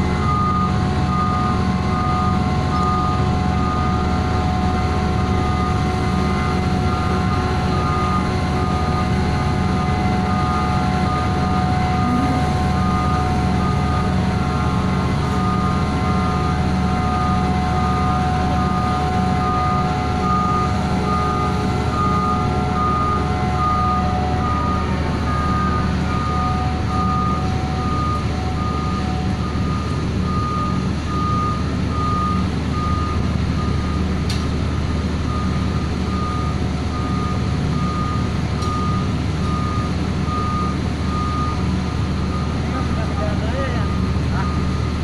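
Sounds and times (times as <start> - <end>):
vehicle warning beeper: 0.0 - 4.1, 7.0 - 34.2, 35.2 - 45.0
engine running steadily: 0.0 - 45.0.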